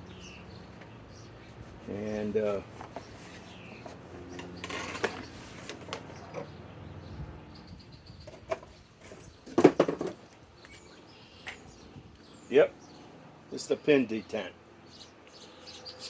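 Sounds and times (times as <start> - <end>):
handling clicks and knocks: 2.7 - 6.6.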